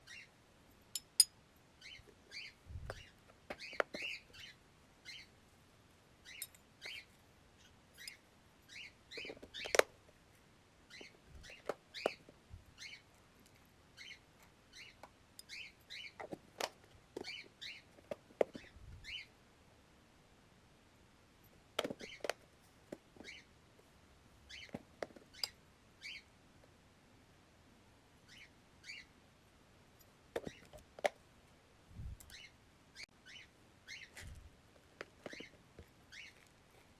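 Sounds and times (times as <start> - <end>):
cockatiels chirping: 0.0 - 0.3, 1.8 - 5.3, 6.2 - 9.9, 10.9 - 13.1, 14.0 - 16.4, 17.2 - 19.3, 23.2 - 23.5, 24.5 - 26.3, 28.3 - 29.1, 32.3 - 34.2, 35.2 - 36.5.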